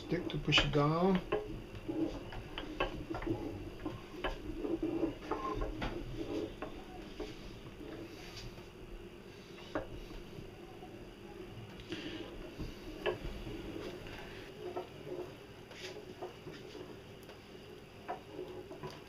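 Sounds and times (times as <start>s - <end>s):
grinder clicking and knocking: 0.0s - 6.0s.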